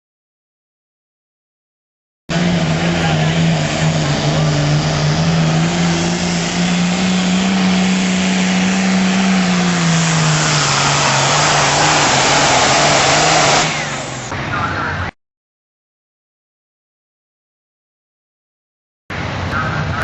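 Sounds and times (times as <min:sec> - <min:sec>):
loud rushing noise: 0:02.3 - 0:14.8
tractor engine under load: 0:02.3 - 0:15.0.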